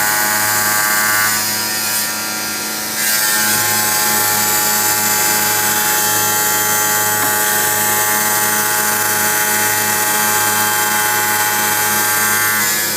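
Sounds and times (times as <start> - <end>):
tile cutting machine motor whine: 0.0 - 12.9.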